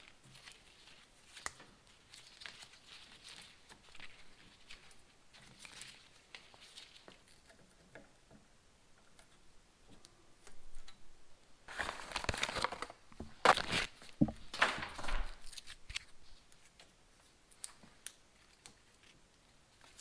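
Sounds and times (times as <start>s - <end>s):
material crinkling and rustling: 0.0s - 7.9s, 11.6s - 19.2s.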